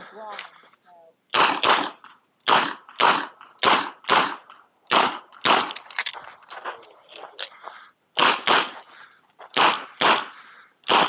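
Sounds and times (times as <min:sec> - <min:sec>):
revolver gunshots with ringing: 0:01.3 - 0:05.9, 0:08.2 - 0:08.9, 0:09.6 - 0:11.0.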